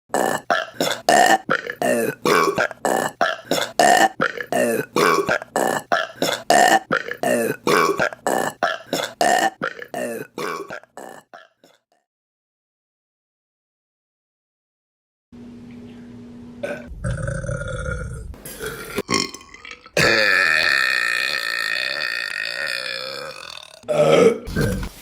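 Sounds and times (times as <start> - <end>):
woman burping: 0.1 - 11.8, 16.6 - 24.7.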